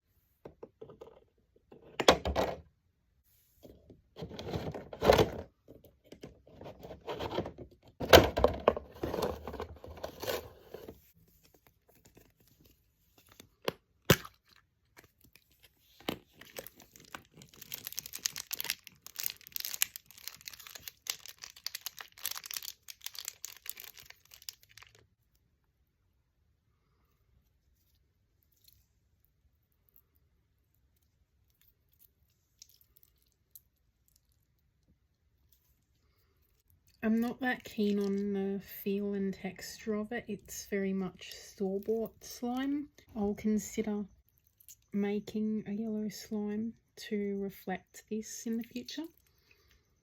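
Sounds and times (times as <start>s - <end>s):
fine crinkling of packaging: 14.4s - 25.3s
packaging rustling and tearing: 15.0s - 25.0s.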